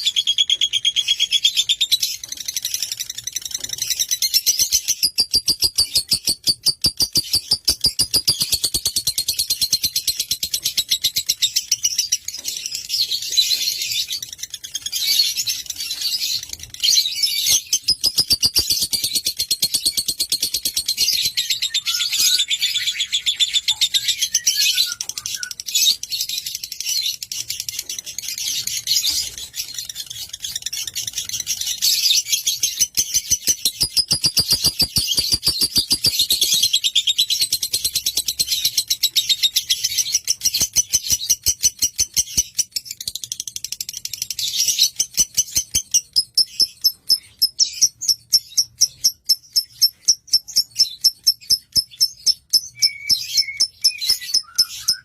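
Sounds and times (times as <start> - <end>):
lovebird chirping shrilly: 32.6 - 37.2.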